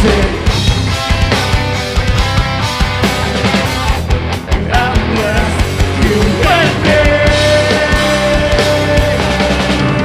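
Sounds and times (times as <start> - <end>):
drum kit beat: 0.0 - 10.0
electric guitars: 0.0 - 10.0
rock band playing live: 0.0 - 10.0.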